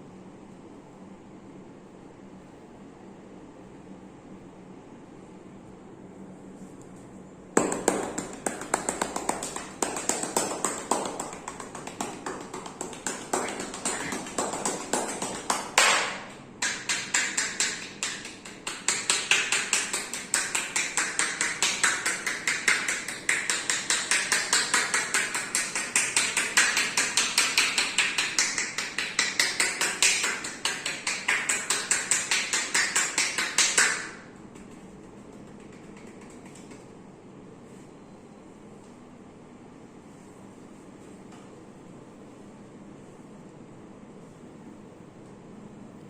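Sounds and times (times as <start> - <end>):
hands slapping body: 7.6 - 36.8.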